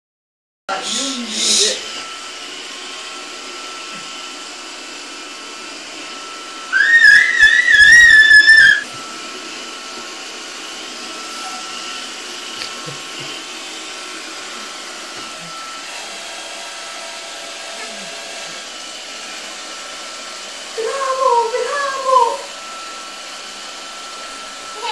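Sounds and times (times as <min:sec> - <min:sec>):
robot vacuum whirring: 0:00.9 - 0:18.8
high warbling whistle tone: 0:06.7 - 0:08.9.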